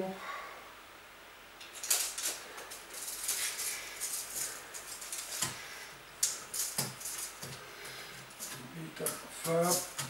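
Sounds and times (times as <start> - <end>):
rustling and clicking of objects: 1.6 - 10.0.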